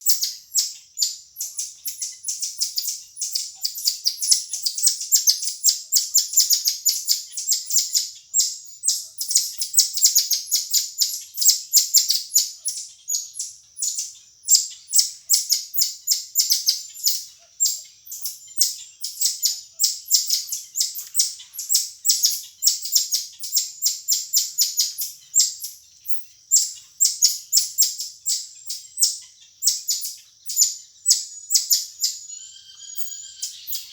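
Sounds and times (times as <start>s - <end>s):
marmoset chirping: 0.0s - 33.9s.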